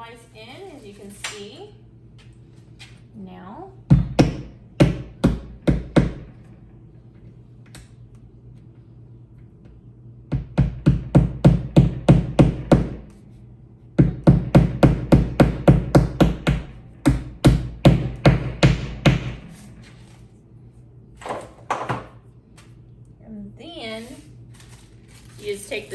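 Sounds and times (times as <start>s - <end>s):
hammer tapping wall anchors: 10.3s - 13.0s, 14.0s - 19.4s.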